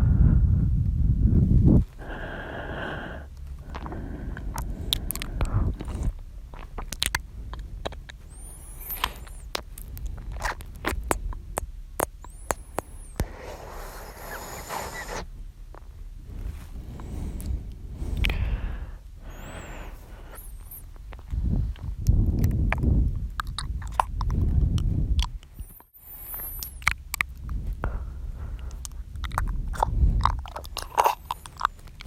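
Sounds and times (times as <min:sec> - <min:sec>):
man breathing: 0:01.9 - 0:06.2, 0:12.7 - 0:15.3, 0:16.2 - 0:21.8, 0:27.6 - 0:29.2
mouth clicks and lip smacks: 0:01.9 - 0:32.0.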